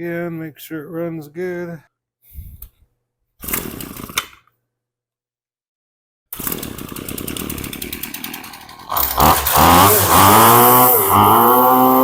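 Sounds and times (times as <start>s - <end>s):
string trimmer engine revving: 3.4s - 4.2s, 6.4s - 12.0s.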